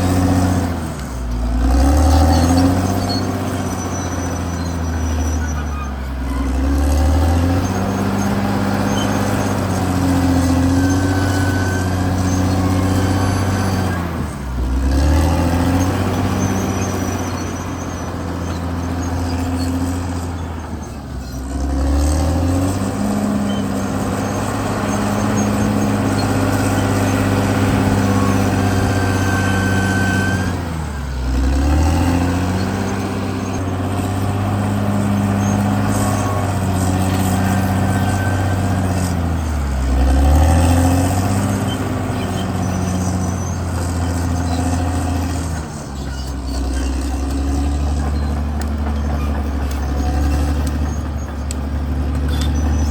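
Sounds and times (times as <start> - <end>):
bulldozer diesel engine under load: 0.0 - 52.9.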